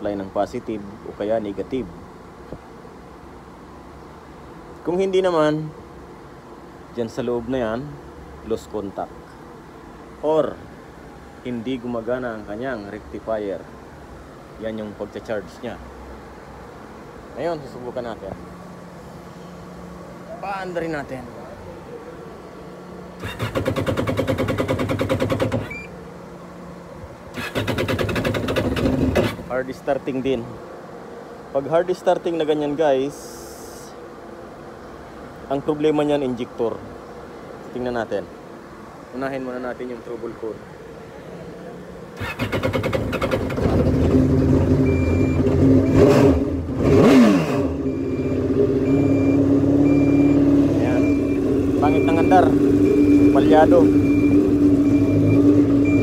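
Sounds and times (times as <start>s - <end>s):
engine cranked by starter: 23.2s - 25.9s, 27.3s - 29.5s, 42.2s - 56.0s.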